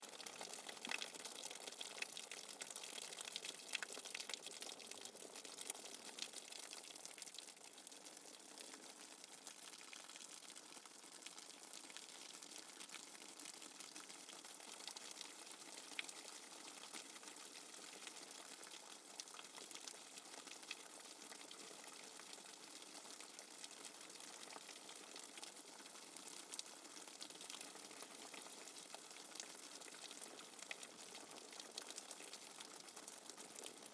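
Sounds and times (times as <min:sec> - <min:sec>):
rainwater dripping: 0:00.3 - 0:08.8.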